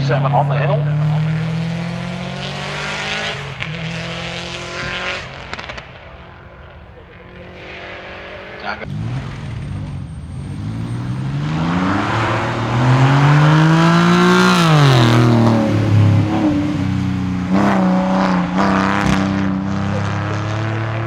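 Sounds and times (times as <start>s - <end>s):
race car engine accelerating: 0.0s - 21.0s
sharp engine cracks: 3.0s - 12.8s.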